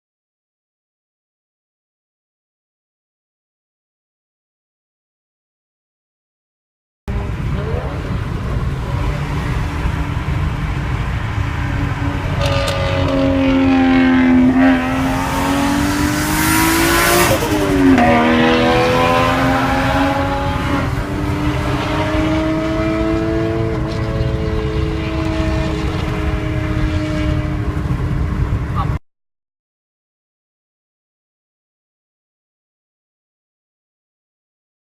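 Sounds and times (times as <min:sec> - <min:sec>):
car engine revving: 0:07.1 - 0:29.0.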